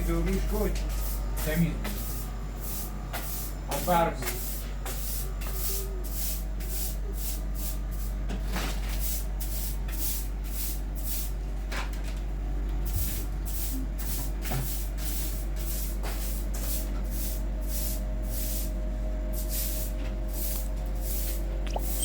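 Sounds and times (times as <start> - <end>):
steady low hum: 0.0 - 8.0, 12.6 - 14.2, 16.6 - 22.0.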